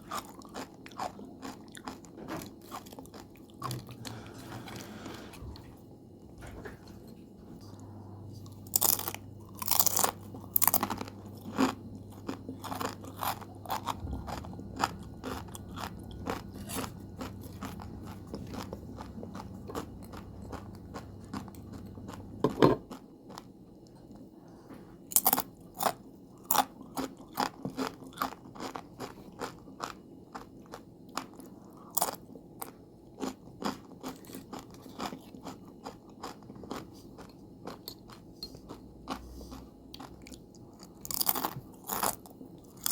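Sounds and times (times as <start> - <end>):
crunching potato chips: 8.6 - 22.2, 25.1 - 39.3, 40.0 - 42.9.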